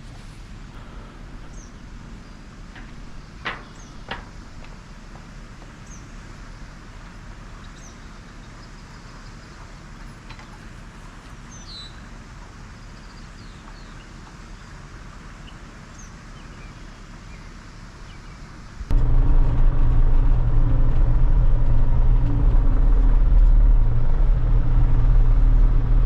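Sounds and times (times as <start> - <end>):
small birds chirping: 1.4 - 4.2, 5.1 - 6.8, 7.5 - 10.7, 11.4 - 12.1, 12.7 - 18.6
low background rumble: 18.7 - 26.0.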